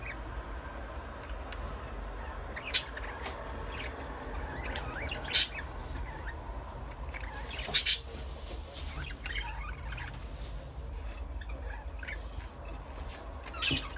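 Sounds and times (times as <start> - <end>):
budgerigars chattering: 0.0 - 8.3, 8.9 - 10.3, 11.3 - 13.9
sharp budgerigar chirps: 2.6 - 5.8, 7.2 - 8.0.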